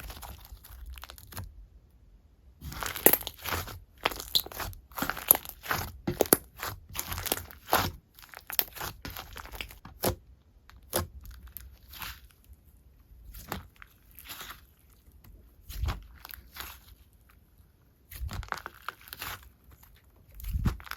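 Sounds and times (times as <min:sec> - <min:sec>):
slime squished clicking and popping: 0:02.7 - 0:11.4.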